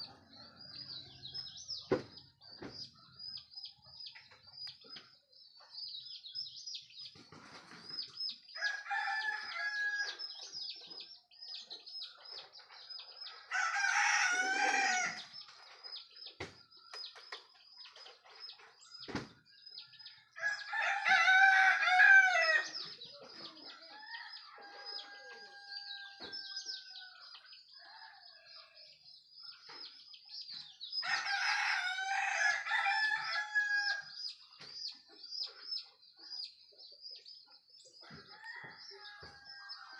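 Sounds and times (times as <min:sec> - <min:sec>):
roosters crowing: 0:08.6 - 0:10.4, 0:13.4 - 0:15.4, 0:20.2 - 0:22.9, 0:23.7 - 0:27.4, 0:31.0 - 0:34.2, 0:38.0 - 0:39.9.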